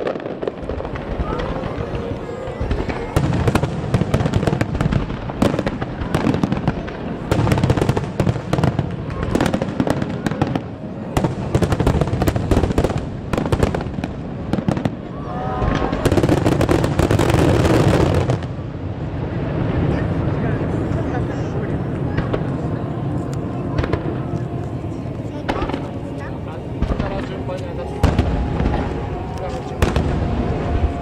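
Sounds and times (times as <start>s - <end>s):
fireworks bangs and crackles: 0.0s - 31.0s
low rumble: 18.2s - 31.0s.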